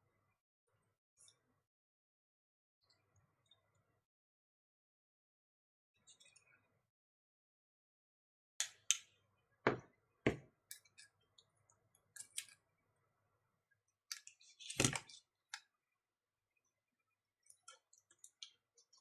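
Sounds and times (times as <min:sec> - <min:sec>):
clicks and taps of small tools: 0:08.6 - 0:09.1.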